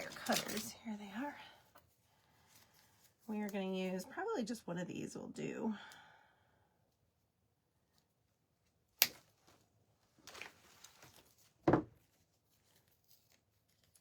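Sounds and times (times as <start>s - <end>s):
stems rustling: 0.0s - 1.3s, 2.2s - 4.0s, 10.2s - 14.0s.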